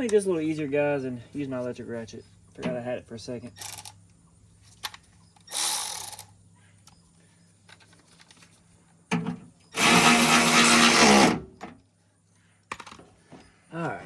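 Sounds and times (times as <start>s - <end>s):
electric ratchet running: 3.6s - 4.0s, 5.5s - 6.3s, 9.8s - 11.4s.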